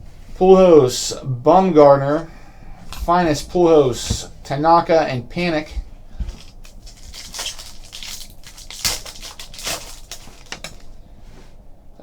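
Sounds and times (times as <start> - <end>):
trading cards clicking and rustling: 6.3 - 10.9.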